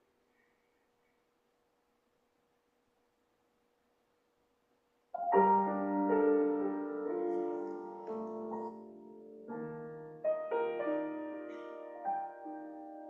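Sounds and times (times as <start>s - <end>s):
piano playing slow chords: 5.2s - 13.0s.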